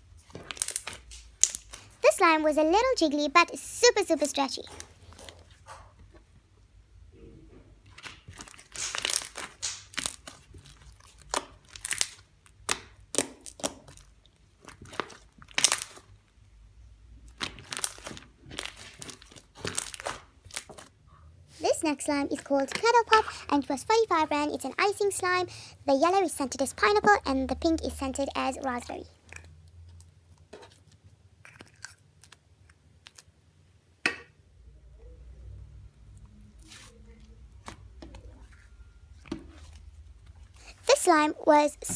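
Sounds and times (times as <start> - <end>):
slime squished by hand crackling: 0.1 - 2.7, 7.9 - 16.3, 17.2 - 20.9.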